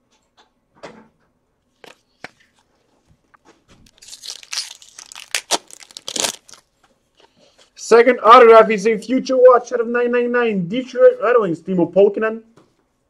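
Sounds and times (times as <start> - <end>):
wrapper crinkling and rustling: 3.8 - 6.8.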